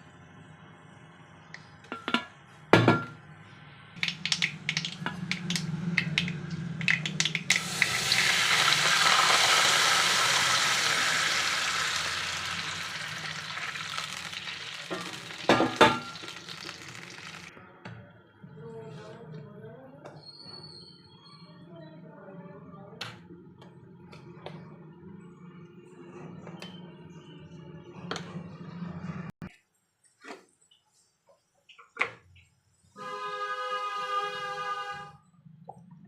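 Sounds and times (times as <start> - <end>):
utensil clicking on pan: 4.0 - 7.6
food sizzling in hot oil: 4.0 - 17.5.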